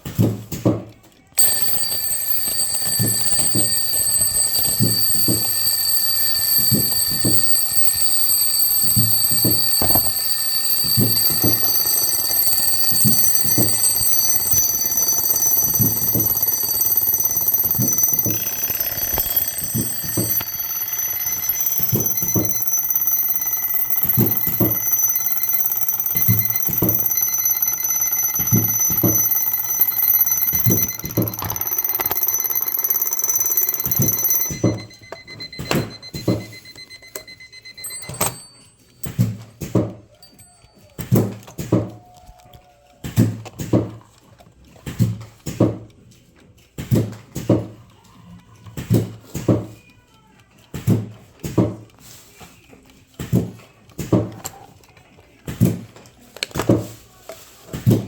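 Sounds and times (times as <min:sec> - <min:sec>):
alarm clocks ringing: 0:01.4 - 0:42.6.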